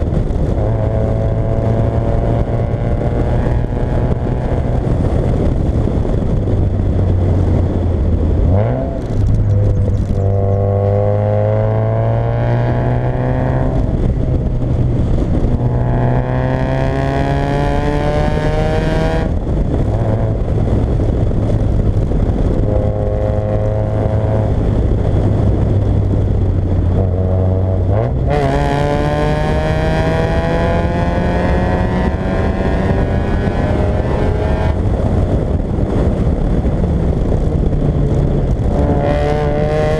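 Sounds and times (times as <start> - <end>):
car engine revving through gears: 0.5 - 5.0, 8.4 - 14.4, 15.3 - 20.4, 22.6 - 24.8, 26.9 - 34.9, 38.1 - 39.9.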